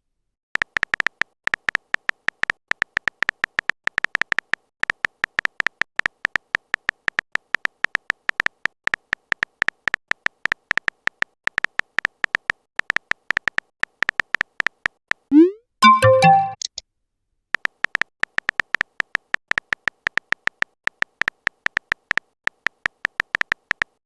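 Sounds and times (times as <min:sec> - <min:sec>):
rapid short typing beeps: 0:15.3 - 0:16.6
short electronic jingle: 0:15.3 - 0:16.6.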